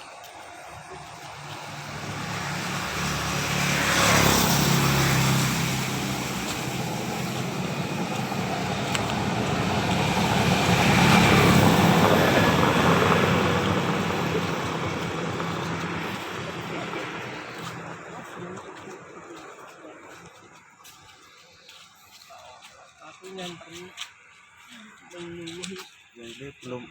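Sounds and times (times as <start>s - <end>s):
rushing noise: 0.0s - 20.6s
vehicle engine running: 0.0s - 22.2s.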